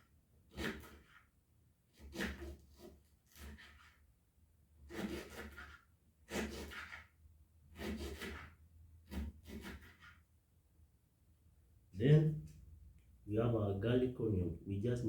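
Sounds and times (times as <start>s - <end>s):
knife sawing through ginger on board: 0.0s - 1.3s, 1.9s - 4.1s, 4.8s - 10.3s.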